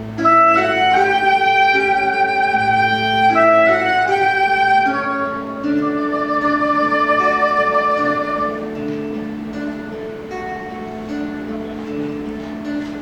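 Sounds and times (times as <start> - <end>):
soprano saxophone melody: 0.0 - 9.9
guitar accompaniment: 0.0 - 13.0.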